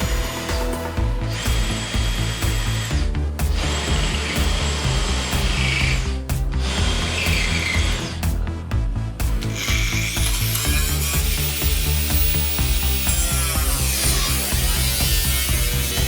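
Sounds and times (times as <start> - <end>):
power drill cutting sheet metal: 0.0 - 8.4, 9.4 - 16.0
background music with steady beat: 0.0 - 16.0.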